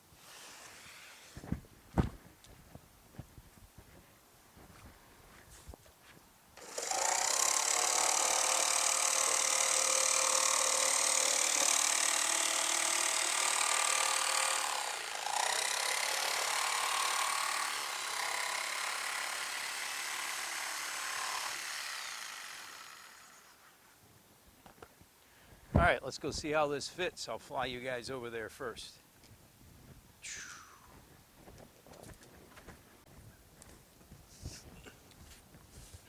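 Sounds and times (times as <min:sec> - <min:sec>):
table saw cutting: 0:06.6 - 0:23.6.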